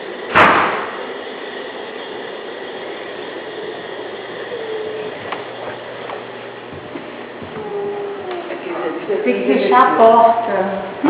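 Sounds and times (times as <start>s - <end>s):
wine fermenting in vats: 0.0s - 11.0s
loud bump: 0.3s - 1.0s.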